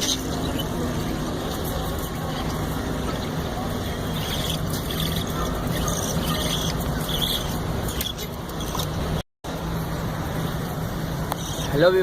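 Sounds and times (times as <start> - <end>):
rushing background noise: 0.0 - 12.0
budgerigar chirps: 4.0 - 8.8, 11.4 - 11.8.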